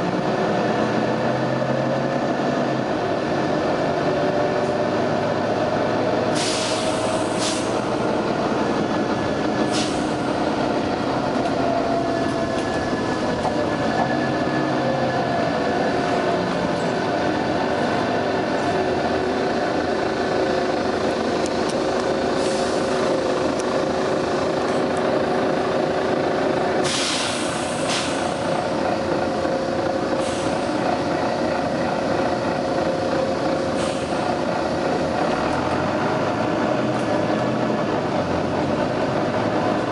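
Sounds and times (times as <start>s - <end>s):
bus engine droning: 0.0s - 39.9s
compressed air hisses: 6.4s - 7.8s, 26.8s - 28.4s, 30.2s - 30.7s.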